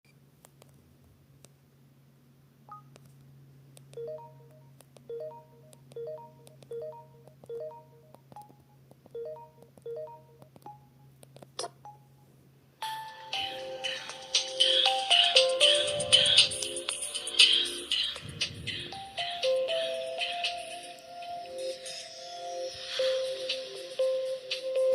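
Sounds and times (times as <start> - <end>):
beeping ringtone: 4.0 - 8.6, 9.2 - 11.0, 12.8 - 24.9
ringtone melody: 4.0 - 11.1, 11.8 - 24.9.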